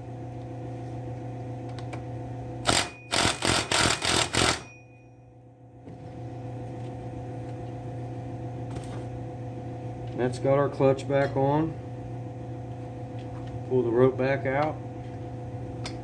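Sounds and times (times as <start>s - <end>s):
steady low hum: 0.0s - 16.0s
loud rattling bursts: 2.7s - 4.6s.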